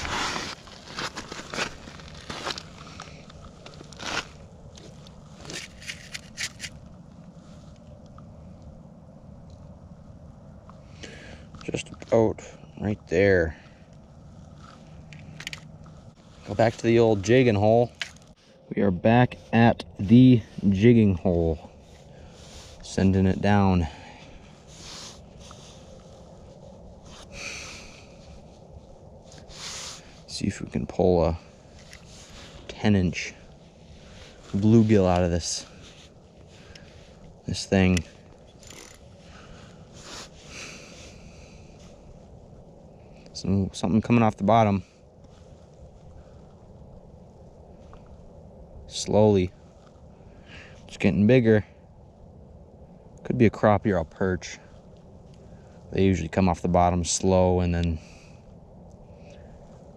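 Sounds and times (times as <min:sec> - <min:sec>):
snow and ice crunching: 0:00.0 - 0:07.8, 0:19.2 - 0:46.4
person exhaling: 0:27.3 - 0:28.2.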